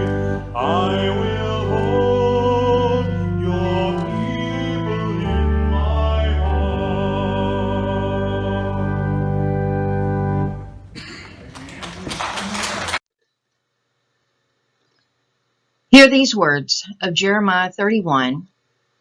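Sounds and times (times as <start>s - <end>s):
slow church music chords: 0.0s - 11.5s.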